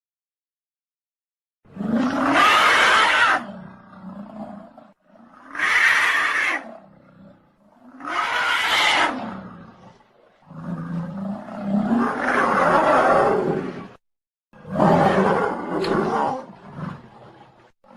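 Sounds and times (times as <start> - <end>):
dinosaur roars: 1.7 - 14.0, 14.6 - 17.9
low rumbling growls: 3.4 - 5.5, 9.0 - 14.0, 14.6 - 17.9.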